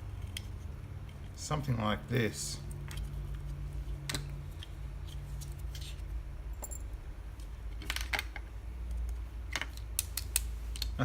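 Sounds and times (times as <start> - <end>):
steady low hum: 0.0 - 11.0
plastic parts clicking: 7.8 - 11.0.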